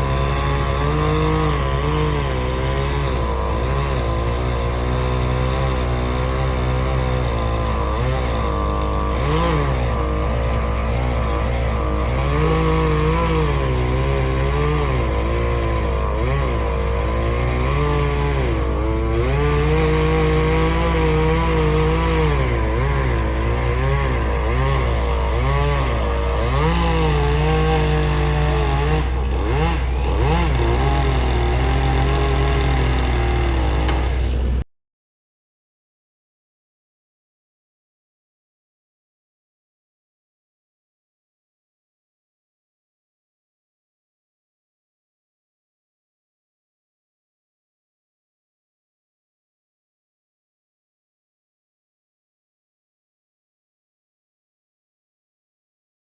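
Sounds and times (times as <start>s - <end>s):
chainsaw running and cutting: 0.0s - 34.7s.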